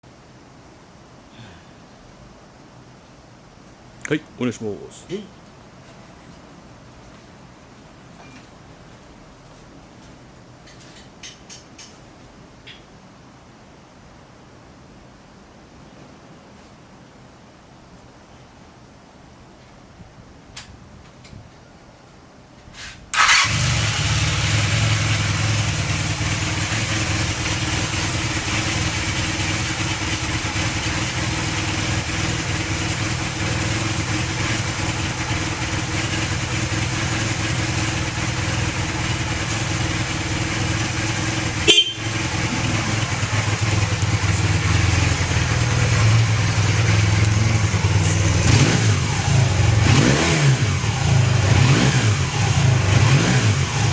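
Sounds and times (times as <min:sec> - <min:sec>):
electric starter cranking: 0:23.2 - 0:24.6
motorcycle engine idling: 0:23.2 - 0:49.9.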